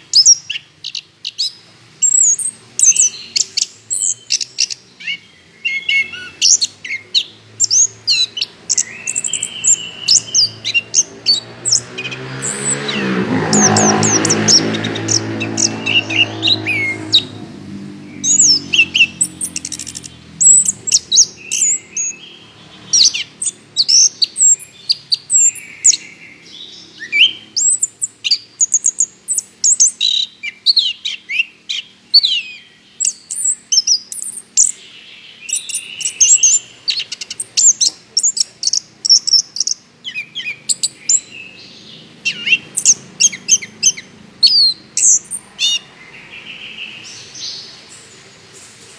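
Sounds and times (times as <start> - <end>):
thrush singing: 2.6 - 26.2
low droning: 8.5 - 21.5.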